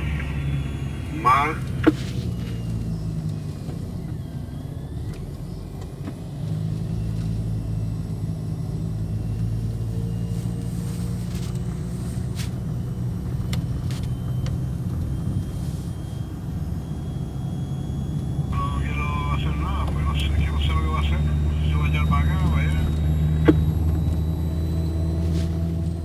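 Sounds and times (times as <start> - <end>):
car engine and road noise: 0.0 - 17.3.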